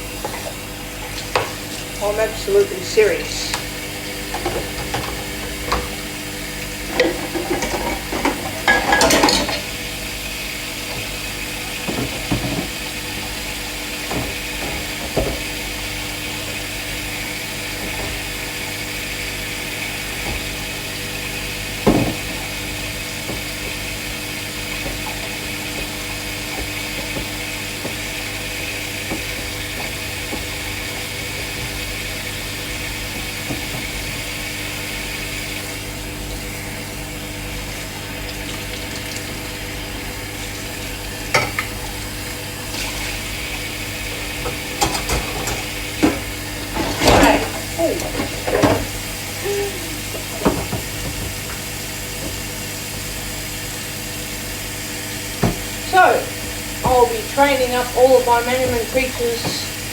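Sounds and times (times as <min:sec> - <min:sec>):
dishes clattering: 0:06.9 - 0:09.7, 0:41.3 - 0:41.8, 0:44.5 - 0:49.0.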